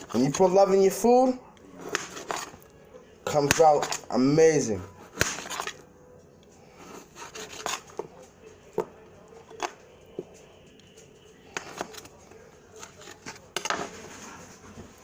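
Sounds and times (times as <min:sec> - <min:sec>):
knife scraping on board: 0:01.7 - 0:02.6, 0:05.0 - 0:05.8, 0:06.8 - 0:08.1, 0:11.5 - 0:12.1
knife chopping on cutting board: 0:05.1 - 0:05.7.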